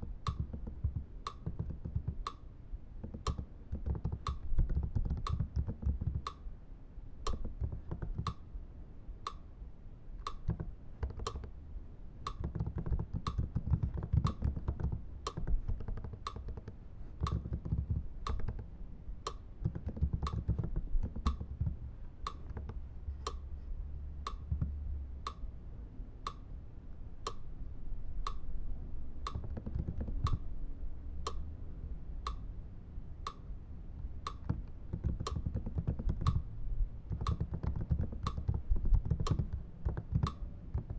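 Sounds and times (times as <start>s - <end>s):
steady ticking: 0.0s - 2.4s, 3.0s - 6.4s, 7.2s - 8.4s, 10.2s - 11.5s, 12.2s - 23.5s, 29.2s - 30.4s, 33.2s - 36.5s, 37.1s - 40.9s
keyboard key taps: 0.2s - 2.4s, 3.0s - 6.4s, 7.3s - 8.4s, 10.3s - 11.5s, 12.3s - 18.7s, 19.6s - 22.8s, 29.3s - 30.4s, 34.3s - 36.4s, 37.1s - 40.9s.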